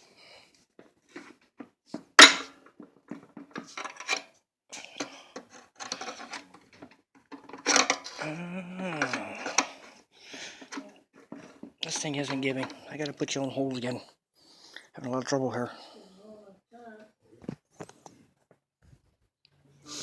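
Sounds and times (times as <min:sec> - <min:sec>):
metal tools clanking and scraping: 0:05.5 - 0:06.6, 0:07.3 - 0:08.2, 0:10.6 - 0:13.0
person groaning with effort: 0:08.2 - 0:10.0.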